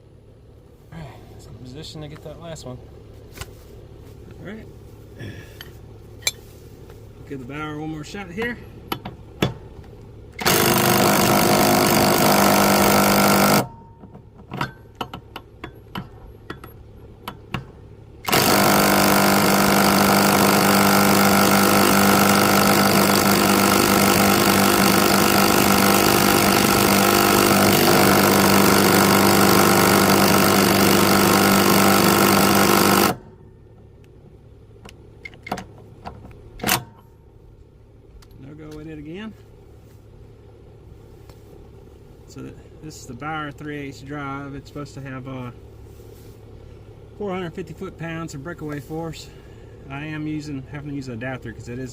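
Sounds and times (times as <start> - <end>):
tool clicks and knocks: 8.9 - 11.4, 12.0 - 19.1
impact wrench hammering: 10.4 - 33.4.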